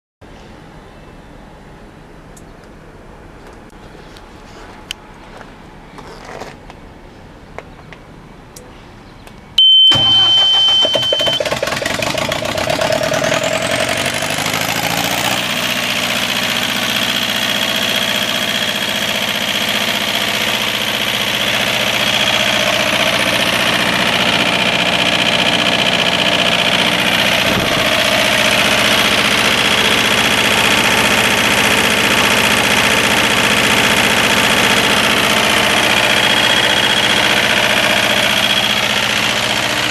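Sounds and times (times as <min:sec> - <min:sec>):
steady high tone: 0:09.6 - 0:11.6, 0:20.4 - 0:39.9
diesel generator engine running: 0:09.6 - 0:39.9
rising high whine: 0:09.6 - 0:39.9.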